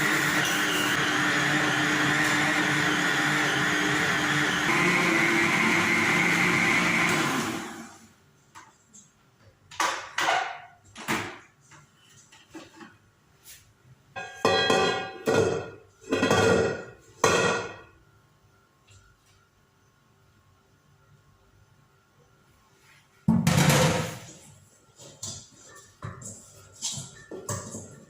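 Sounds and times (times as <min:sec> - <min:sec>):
electric mixer motor running: 0:00.0 - 0:08.1.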